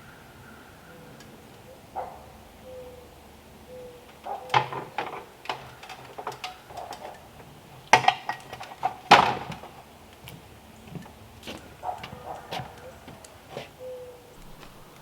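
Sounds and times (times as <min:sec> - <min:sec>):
sharp knocks and clatters: 0:04.1 - 0:12.8.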